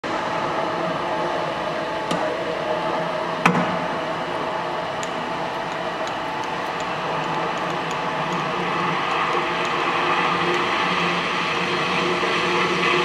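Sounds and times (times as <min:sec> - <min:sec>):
bench drill running: 0:05.0 - 0:13.0.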